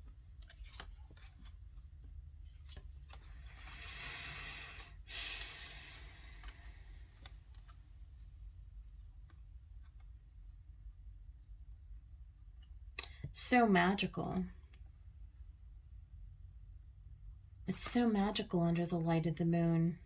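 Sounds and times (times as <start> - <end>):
cards sliding: 0.3 - 1.8, 2.5 - 5.0, 6.0 - 7.8
cards tapping and clicking: 0.3 - 1.8.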